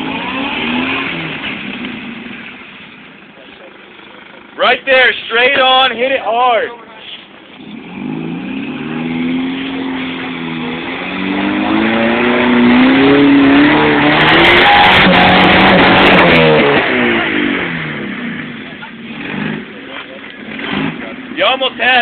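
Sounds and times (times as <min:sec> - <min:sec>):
engine revving hard: 0:00.0 - 0:02.4, 0:07.6 - 0:22.0.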